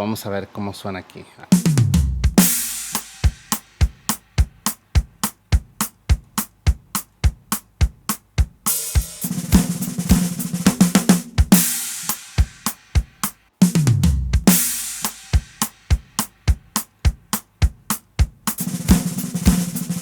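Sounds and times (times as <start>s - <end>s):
tom fills: 0.0s - 20.0s
drum beat: 1.5s - 20.0s
cymbal crashes: 1.6s - 4.8s, 8.7s - 13.3s, 14.5s - 16.3s.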